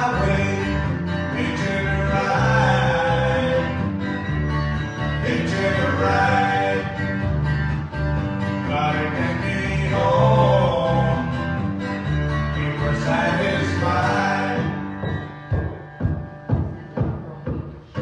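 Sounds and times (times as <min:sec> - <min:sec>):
acoustic guitar: 0:00.0 - 0:18.0.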